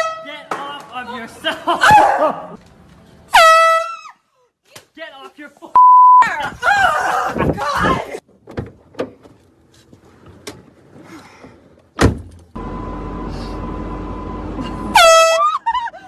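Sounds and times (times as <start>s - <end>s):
car engine running with whine: 12.6s - 15.0s
loud air horn blast: 14.8s - 15.4s.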